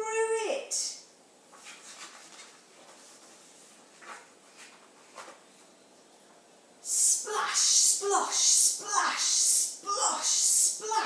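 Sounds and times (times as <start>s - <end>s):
faint rustles and soft taps: 1.5s - 6.5s.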